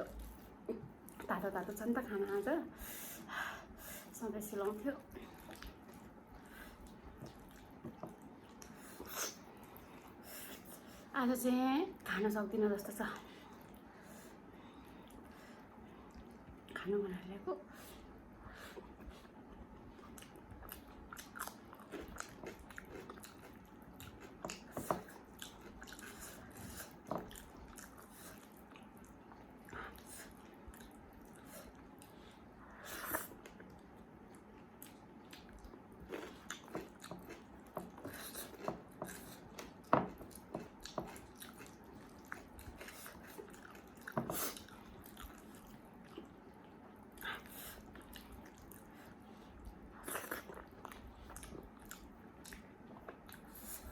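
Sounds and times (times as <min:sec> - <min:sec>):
person chewing food: 0:05.2 - 0:10.9, 0:18.0 - 0:53.9.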